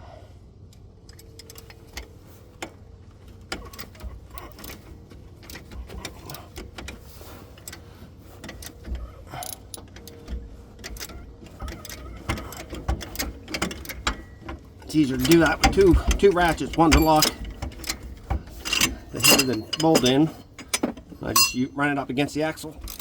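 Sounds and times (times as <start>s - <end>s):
metal tools clinking: 3.5s - 23.0s
hand ratchet clicking: 8.4s - 21.7s.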